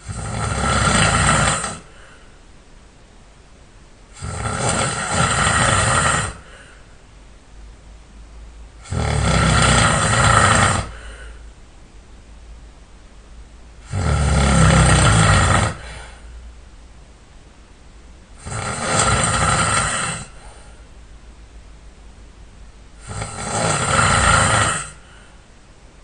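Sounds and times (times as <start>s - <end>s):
person snoring loudly: 0.0s - 2.1s, 4.1s - 6.8s, 8.8s - 11.3s, 13.8s - 16.2s, 18.4s - 20.6s, 23.0s - 25.3s.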